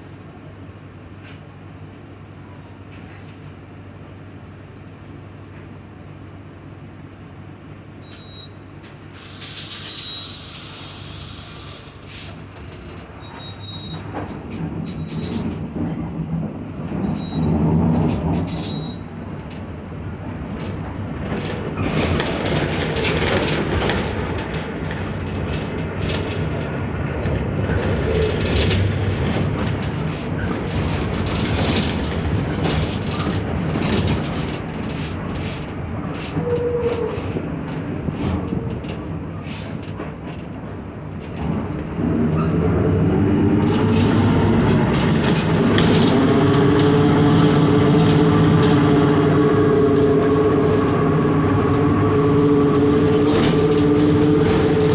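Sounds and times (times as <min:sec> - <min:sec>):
bus engine driving: 0:00.0 - 0:54.9
bus body rattling and clicking: 0:11.8 - 0:54.9.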